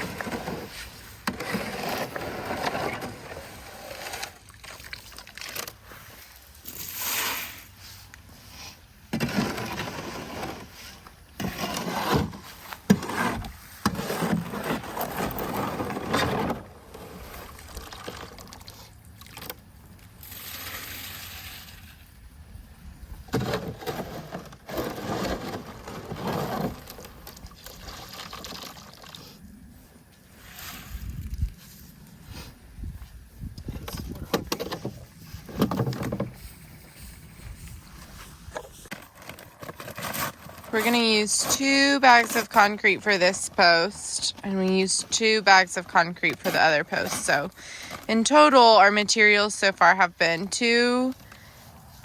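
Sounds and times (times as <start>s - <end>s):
shovel scraping wet concrete: 0.0s - 19.5s, 20.2s - 22.0s, 23.3s - 28.8s, 30.4s - 31.8s, 38.0s - 51.1s.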